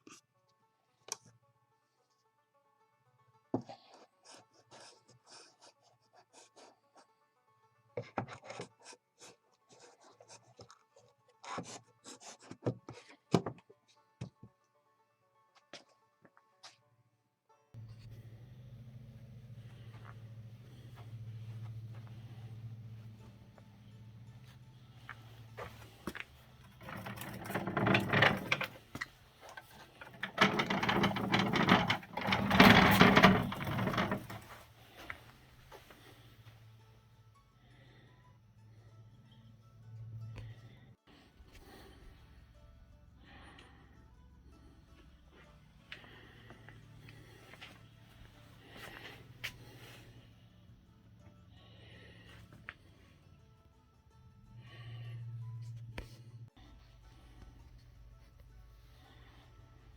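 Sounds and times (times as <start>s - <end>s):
low steady hum: 17.8s - 28.8s
scraping of wooden parts: 24.4s - 36.2s
rapid mechanical clatter: 25.1s - 34.8s.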